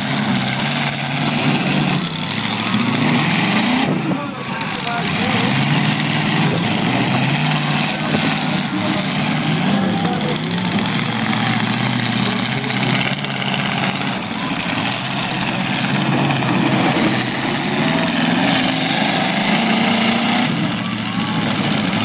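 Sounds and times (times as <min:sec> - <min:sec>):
car engines revving and idling: 0:00.0 - 0:22.0.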